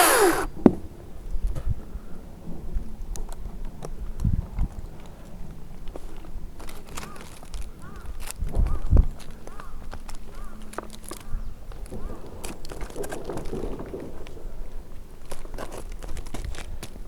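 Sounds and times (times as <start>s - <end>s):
rough scraping: 0.0s - 0.5s.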